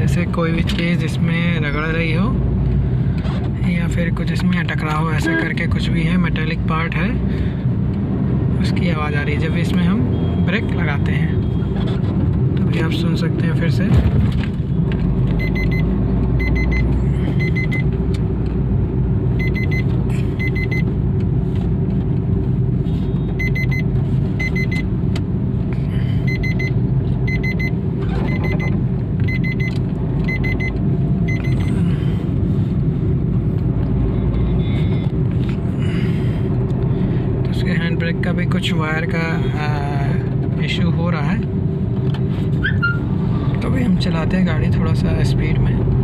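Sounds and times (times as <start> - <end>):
car engine low rumble: 0.0 - 46.0
high-pitched warning beeps: 15.4 - 17.9, 19.4 - 20.9, 23.1 - 24.9, 26.2 - 31.8.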